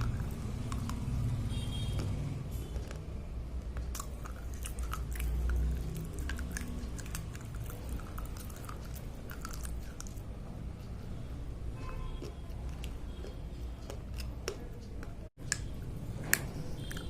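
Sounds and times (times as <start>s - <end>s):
slate pencil being chewed: 0.0s - 1.3s, 3.8s - 11.0s, 12.1s - 15.6s, 16.3s - 17.0s.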